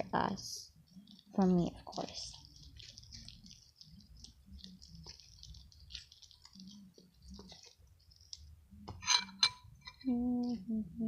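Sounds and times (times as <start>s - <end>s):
slime squishing by hand: 0.0s - 8.6s.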